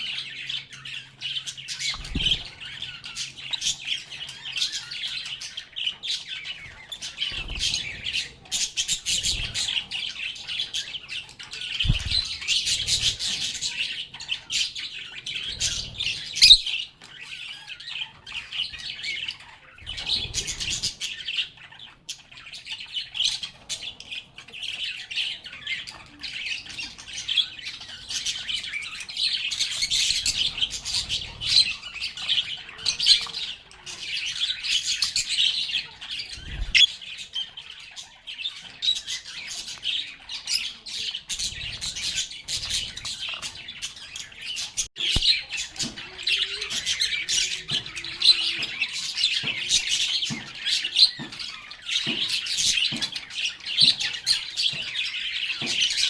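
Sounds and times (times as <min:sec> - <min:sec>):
lovebirds chattering: 0:00.0 - 0:56.0.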